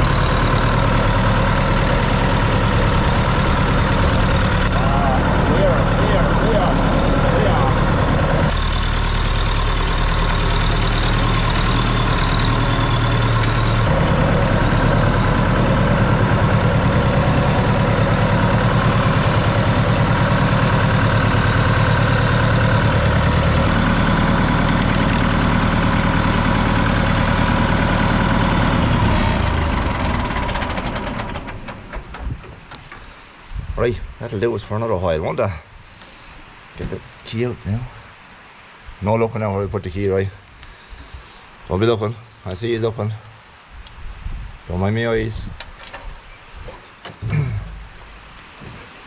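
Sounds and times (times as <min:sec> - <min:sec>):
diesel tractor engine running: 0:00.0 - 0:33.4.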